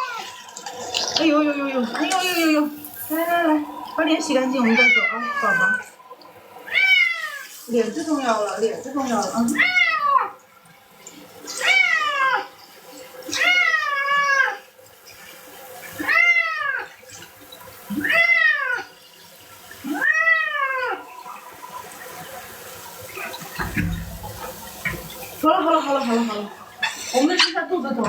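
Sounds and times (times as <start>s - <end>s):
cat meowing: 4.6s - 5.9s, 6.7s - 7.5s, 9.5s - 10.4s, 11.5s - 12.5s, 13.3s - 14.6s, 16.0s - 16.9s, 18.0s - 18.9s, 19.8s - 21.1s.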